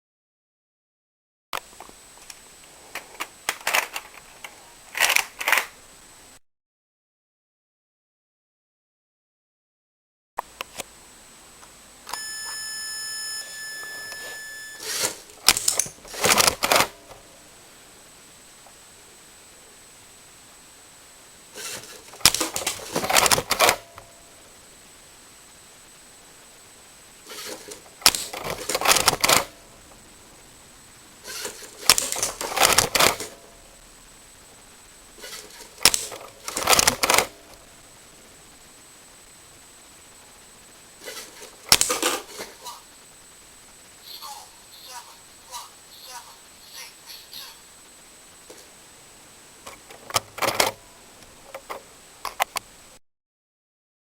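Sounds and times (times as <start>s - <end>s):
electronic beep tone: 12.2s - 14.8s
plastic clicking and clattering: 21.6s - 24.0s, 31.3s - 33.4s, 35.2s - 37.6s
sharp click: 35.2s - 37.6s, 41.0s - 42.2s.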